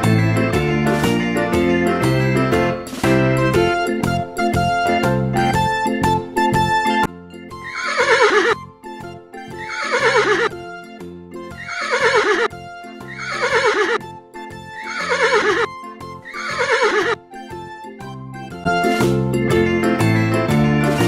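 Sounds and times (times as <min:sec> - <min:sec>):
light background music: 0:00.0 - 0:21.0
horse whinnying: 0:07.6 - 0:08.6, 0:09.5 - 0:10.5, 0:11.5 - 0:12.5, 0:13.1 - 0:14.0, 0:14.8 - 0:15.7, 0:16.3 - 0:17.2.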